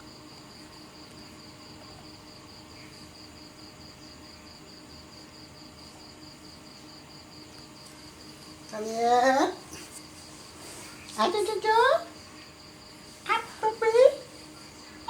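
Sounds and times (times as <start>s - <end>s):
cricket chirping: 0.0s - 15.0s
faint low hum: 0.0s - 15.0s.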